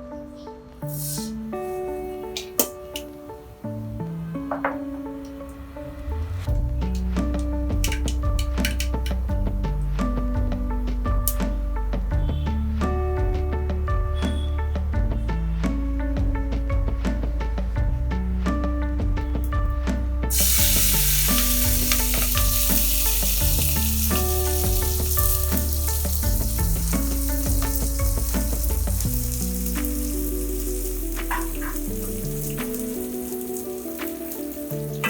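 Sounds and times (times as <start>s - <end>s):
background music: 0.0s - 35.0s
food frying in hot oil: 0.9s - 1.3s, 20.3s - 35.0s.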